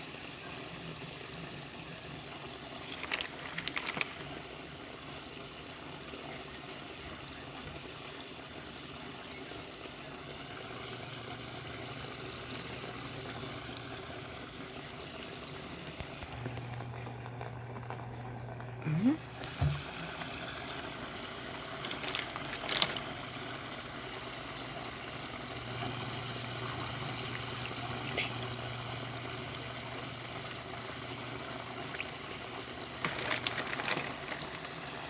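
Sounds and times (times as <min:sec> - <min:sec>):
water trickling: 0:10.4 - 0:35.0
low steady hum: 0:15.7 - 0:35.0.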